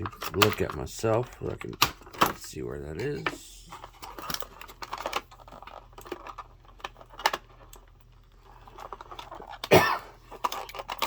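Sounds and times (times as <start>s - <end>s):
plastic packaging crinkling: 0.0s - 11.0s
person coughing: 9.6s - 10.2s.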